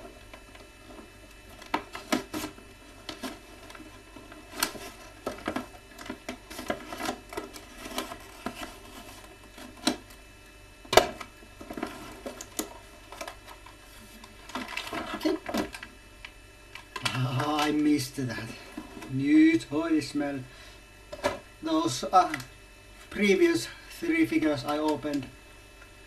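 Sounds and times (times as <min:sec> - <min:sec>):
package clicks knocks and scrapes: 0:00.4 - 0:10.1.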